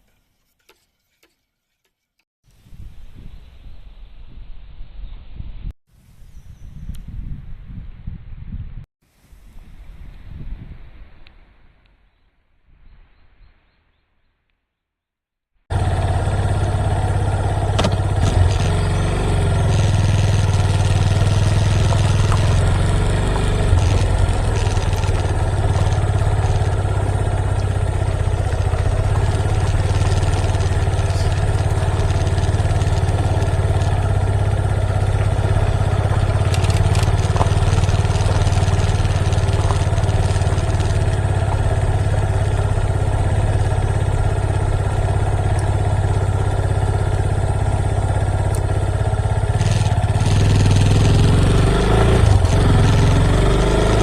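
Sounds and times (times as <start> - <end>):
motorcycle engine running: 15.7 - 54.0.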